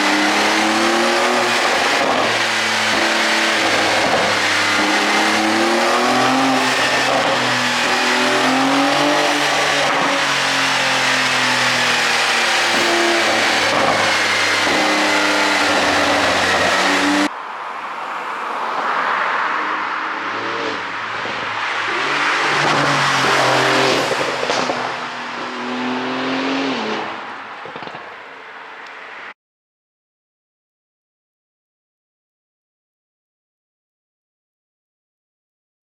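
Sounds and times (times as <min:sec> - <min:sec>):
exhaust crackling: 0:00.0 - 0:17.3
sports car engine revving: 0:00.0 - 0:17.3, 0:19.6 - 0:29.1.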